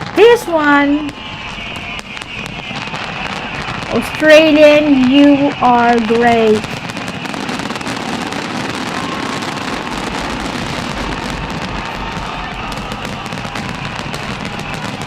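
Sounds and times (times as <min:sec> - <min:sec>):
fireworks bursting and crackling: 0:00.0 - 0:15.0.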